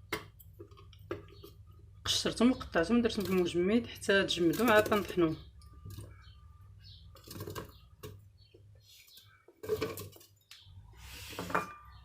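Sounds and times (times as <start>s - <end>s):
kitchen items knocking and clattering: 0.0s - 6.2s, 7.1s - 8.7s, 9.4s - 10.5s, 11.3s - 12.0s.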